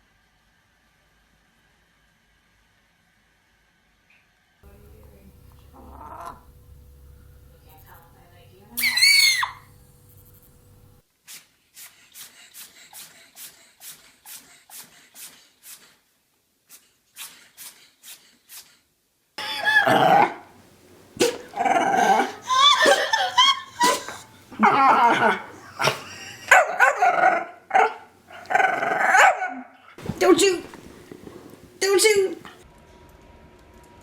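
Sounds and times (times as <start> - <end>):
dog vocalizing loudly: 5.5 - 6.5, 19.4 - 32.6
high squeal: 8.8 - 9.7.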